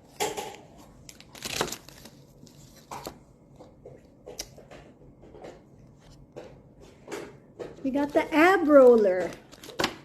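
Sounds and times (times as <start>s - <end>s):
packaging tearing and crinkling: 1.0s - 3.2s, 8.8s - 10.0s.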